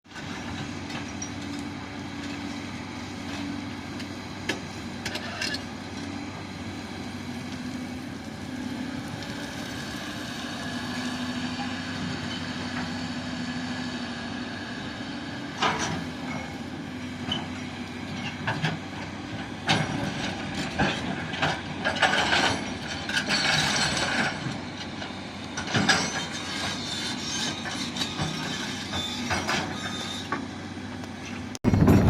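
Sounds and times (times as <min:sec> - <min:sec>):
diesel engine humming: 0:00.2 - 0:22.2.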